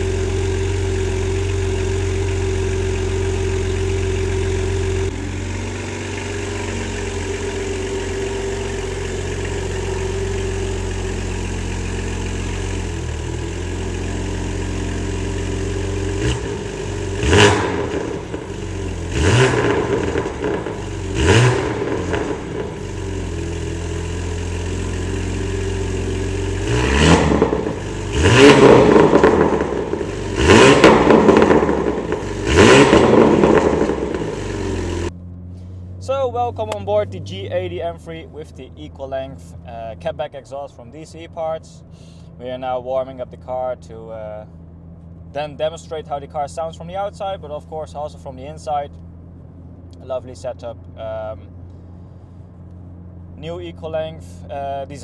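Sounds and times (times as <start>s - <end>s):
car engine revving: 0.0s - 38.7s
car engine idling: 0.0s - 55.0s.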